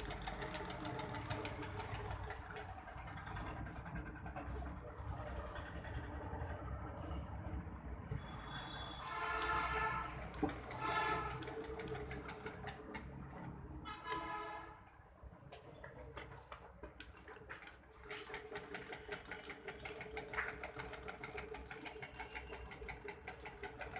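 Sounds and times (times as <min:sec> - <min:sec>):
sewing machine stitching rattle: 0:00.0 - 0:03.6, 0:10.0 - 0:13.5, 0:17.2 - 0:23.9.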